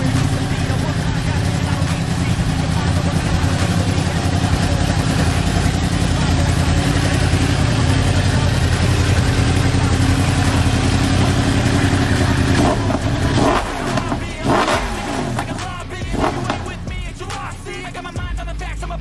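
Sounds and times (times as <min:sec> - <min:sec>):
motorcycle engine running: 0:00.0 - 0:19.0.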